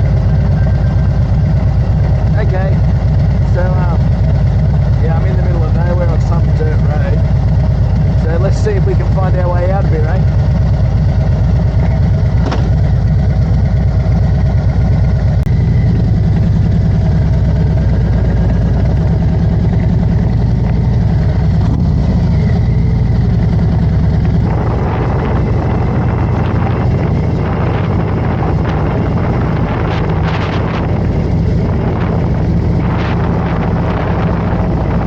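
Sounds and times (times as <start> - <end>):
motorcycle engine running: 0.0 - 35.0
wind noise on microphone: 23.5 - 35.0.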